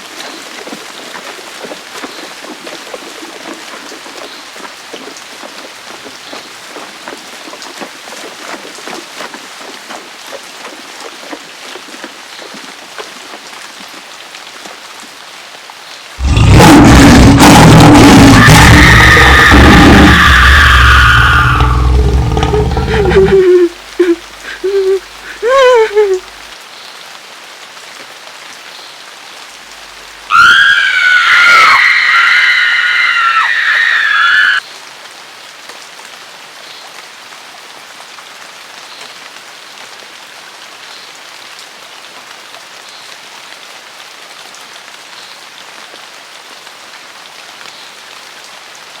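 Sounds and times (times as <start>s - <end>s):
heavy rain on hard surface: 0.0s - 49.0s
high-pitched scream: 16.2s - 26.2s, 30.3s - 34.6s
brief vocal sound: 16.2s - 26.3s.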